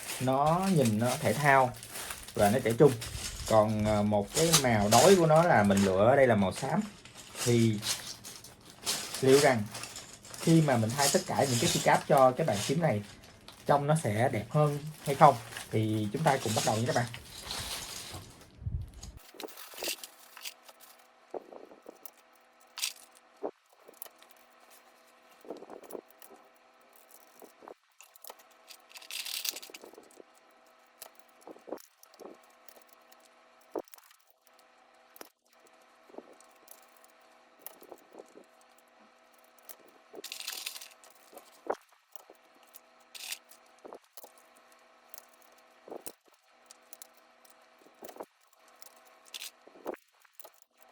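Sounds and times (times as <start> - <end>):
rustling scrapes: 0.0 - 30.2, 39.4 - 46.4.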